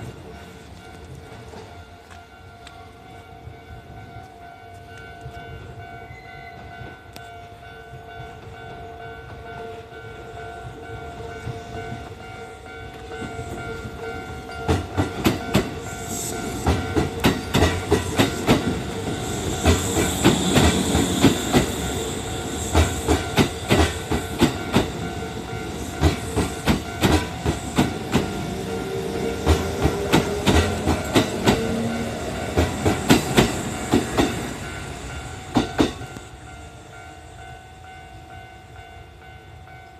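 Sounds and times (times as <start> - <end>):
level-crossing warning bell: 0.0 - 39.9
train wheels clacking over rail joints: 14.6 - 34.7.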